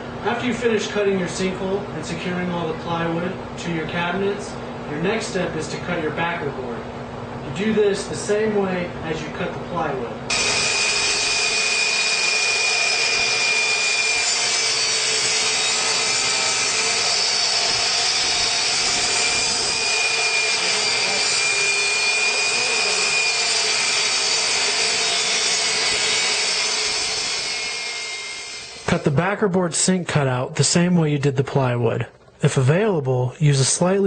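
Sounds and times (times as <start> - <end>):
power saw cutting board: 10.3 - 29.0.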